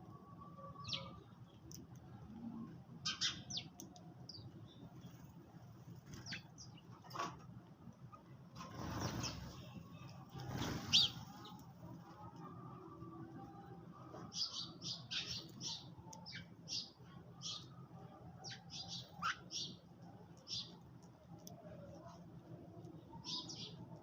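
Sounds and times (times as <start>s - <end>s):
sparrows chirping: 0.7s - 7.2s, 8.2s - 24.0s
wing flapping: 10.3s - 11.6s.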